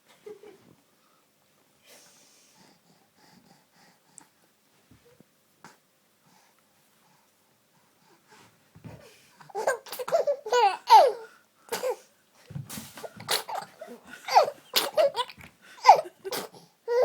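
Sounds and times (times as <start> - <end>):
baby laughing: 9.5 - 11.2, 13.2 - 17.0.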